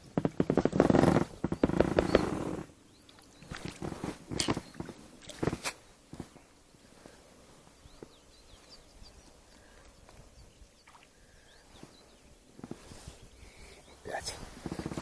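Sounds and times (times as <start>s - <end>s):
faint bird chirps: 1.3s - 15.0s
gear clattering in boat: 14.6s - 15.0s.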